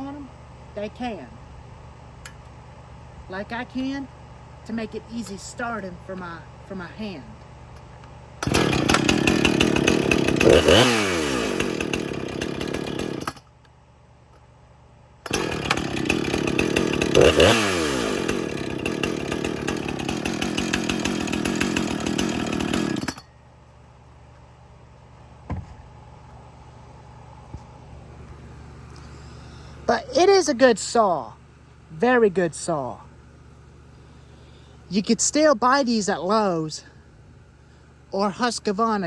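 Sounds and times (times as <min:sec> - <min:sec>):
chainsaw engine revving: 0:08.4 - 0:13.4, 0:15.3 - 0:23.3
short knock: 0:25.5 - 0:25.8.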